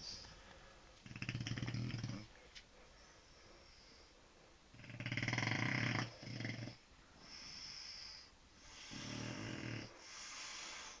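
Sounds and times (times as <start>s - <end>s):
pet snoring: 1.0s - 2.3s, 4.7s - 11.0s
airy breath: 10.0s - 11.0s.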